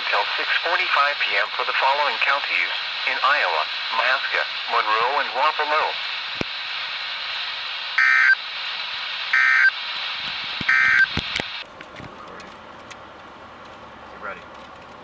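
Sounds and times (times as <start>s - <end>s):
radio static hiss: 0.0s - 11.6s
buzzy data bursts: 8.0s - 8.4s, 9.3s - 9.8s, 10.7s - 11.2s.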